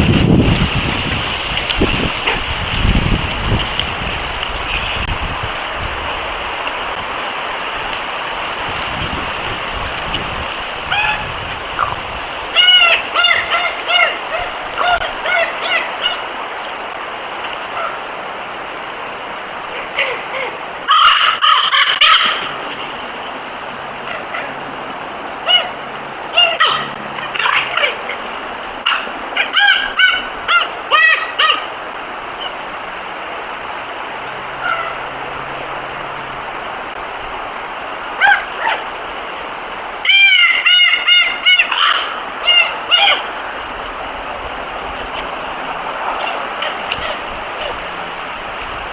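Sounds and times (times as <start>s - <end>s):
steady background hiss: 0.0s - 48.9s
animal calls rising and falling: 10.6s - 18.2s, 19.4s - 37.0s, 37.8s - 48.7s
high-pitched squeaky animal calls: 40.0s - 43.3s.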